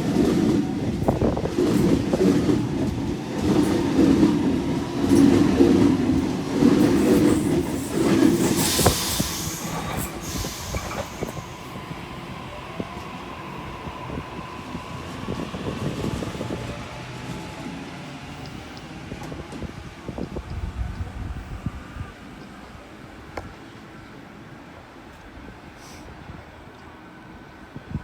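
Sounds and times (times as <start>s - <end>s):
electric train pulling out: 0.4s - 22.1s
brief hiss: 8.4s - 11.6s, 25.8s - 26.1s.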